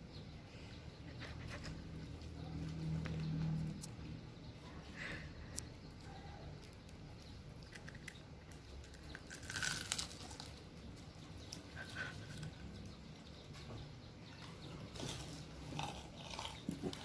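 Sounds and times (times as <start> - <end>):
crinkly handling noise: 7.6 - 11.7.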